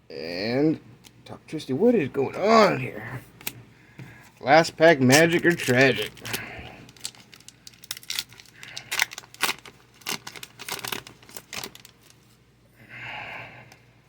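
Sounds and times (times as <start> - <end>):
foil wrapper crackling: 4.6 - 12.4.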